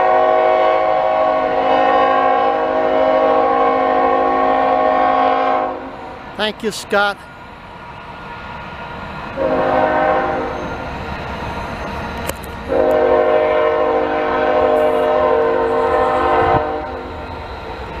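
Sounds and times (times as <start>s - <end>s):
locomotive air horn: 0.0s - 6.1s, 9.4s - 10.8s, 12.7s - 17.1s
freight train rumble: 0.0s - 18.0s.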